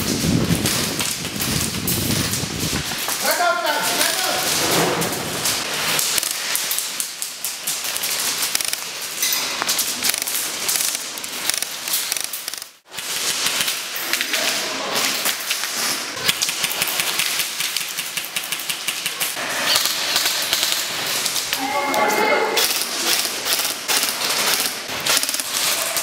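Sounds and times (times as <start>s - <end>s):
sharp clicks and impacts: 0.0s - 21.6s, 22.6s - 26.0s
airsoft guns firing bursts: 16.2s - 21.3s, 22.6s - 25.7s.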